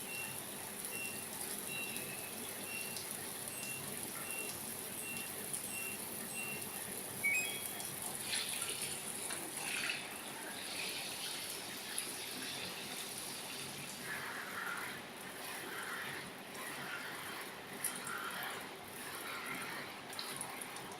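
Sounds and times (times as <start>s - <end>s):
water splashing on control panel: 0.1s - 13.1s.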